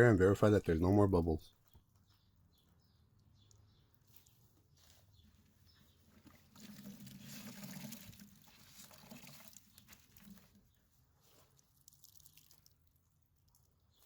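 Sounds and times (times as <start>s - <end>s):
soapy water pattering and splashing: 6.0s - 14.0s.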